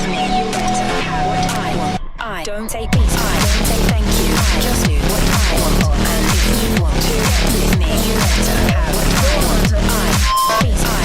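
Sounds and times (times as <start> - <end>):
electronic dance music: 0.0 - 2.0, 2.9 - 11.0
heavy bass sliding down: 3.0 - 11.0.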